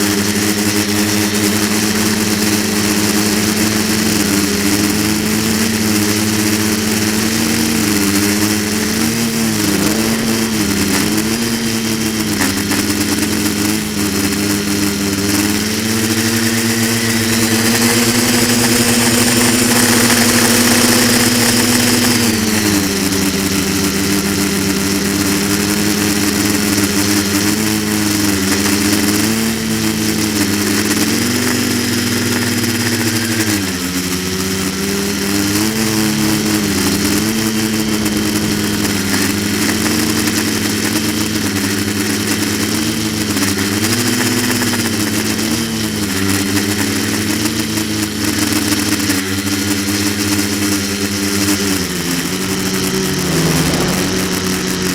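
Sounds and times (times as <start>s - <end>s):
quadcopter motors buzzing: 0.0s - 54.9s.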